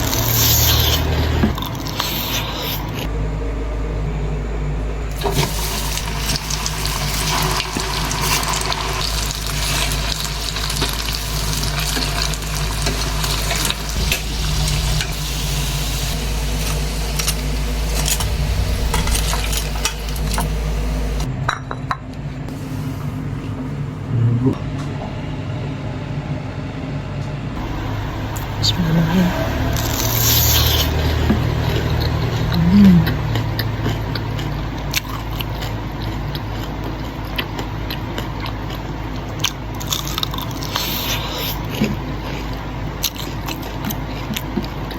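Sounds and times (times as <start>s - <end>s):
low hum: 0.0s - 26.1s, 26.8s - 37.0s
wet chewing and mouth sounds: 29.8s - 44.9s.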